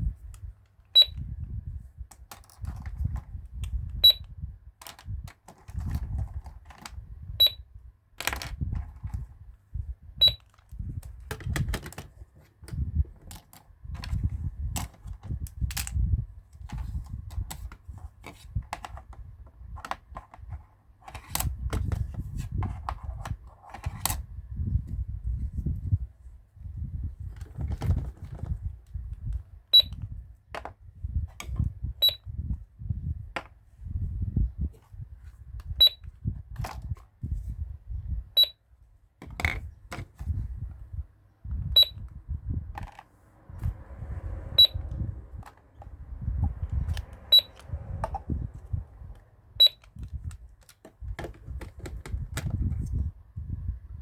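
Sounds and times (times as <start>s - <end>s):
toy cash register beeps: 1.0s - 1.2s, 4.0s - 4.3s, 7.4s - 7.6s, 10.2s - 10.4s, 29.7s - 30.0s, 32.0s - 32.2s, 35.8s - 36.0s, 38.4s - 38.6s, 41.7s - 42.0s, 44.6s - 44.8s, 47.3s - 47.6s, 49.6s - 49.9s
plastic clicks and handling knocks: 2.1s - 4.2s, 4.8s - 7.0s, 8.2s - 9.3s, 10.3s - 16.0s, 16.6s - 24.2s, 39.2s - 40.3s, 42.8s - 43.1s, 49.1s - 52.9s.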